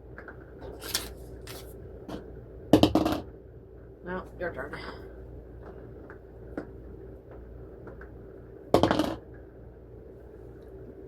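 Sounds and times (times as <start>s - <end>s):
faint steady hum: 0.0s - 11.0s
dice clattering on table: 8.8s - 9.2s.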